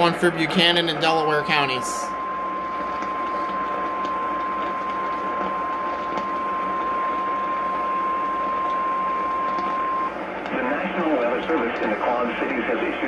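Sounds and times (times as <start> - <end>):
steady high alert tone: 0.0 - 10.2
radio static: 0.0 - 13.0.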